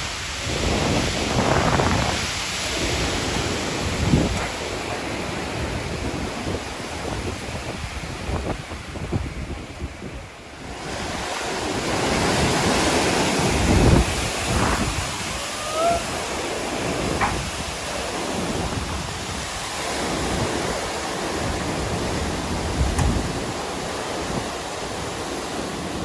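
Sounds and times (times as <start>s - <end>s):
gusting wind rush: 0.0s - 26.0s
wind buffeting microphone: 0.0s - 26.0s.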